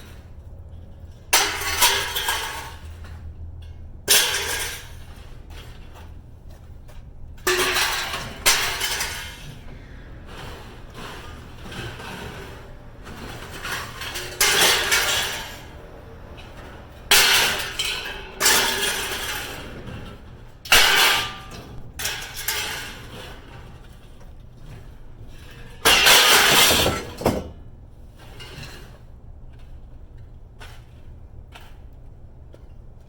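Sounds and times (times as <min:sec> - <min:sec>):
scrap metal crashing clangs: 0:01.2 - 0:27.6.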